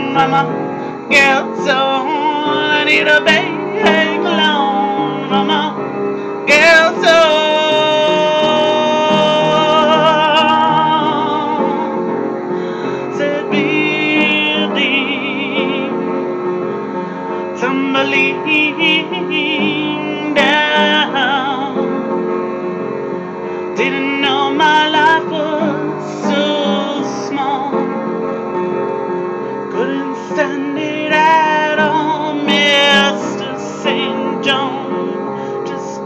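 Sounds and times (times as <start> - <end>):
woman singing with vibrato: 0.0 - 12.1, 23.8 - 27.9, 29.7 - 36.0
piano accompaniment: 0.0 - 36.0.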